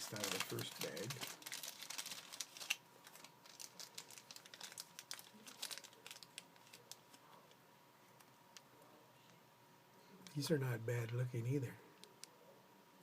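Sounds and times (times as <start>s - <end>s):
packaging bag crinkling: 0.0s - 7.2s.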